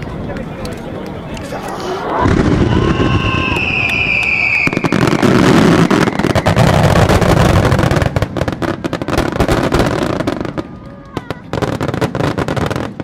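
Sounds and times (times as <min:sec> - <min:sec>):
fireworks bursting and crackling: 0:00.0 - 0:13.0
heavy rumble: 0:01.4 - 0:04.2.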